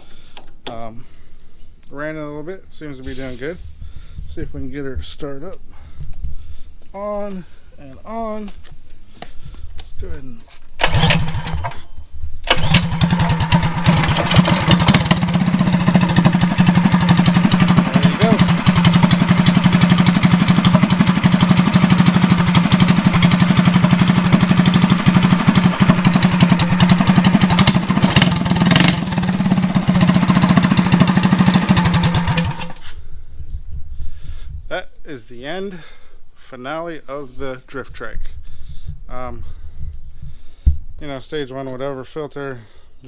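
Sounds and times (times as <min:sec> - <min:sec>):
small engine starting and running: 0:10.8 - 0:33.0.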